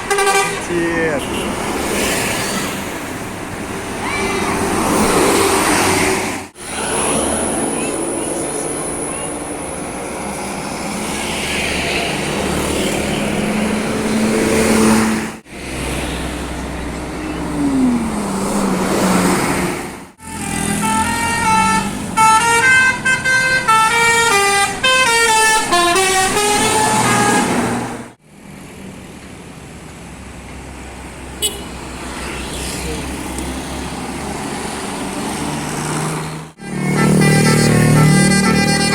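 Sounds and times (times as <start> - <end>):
bus air horn melody: 0.0 - 0.7, 20.2 - 27.9, 31.4 - 31.7, 36.6 - 38.9
bus engines: 0.0 - 38.9
road noise: 0.0 - 38.9.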